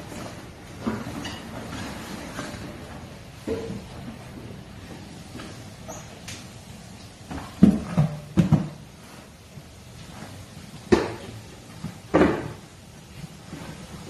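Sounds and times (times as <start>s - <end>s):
sharp knocks and thumps: 7.2s - 9.0s, 10.8s - 12.7s.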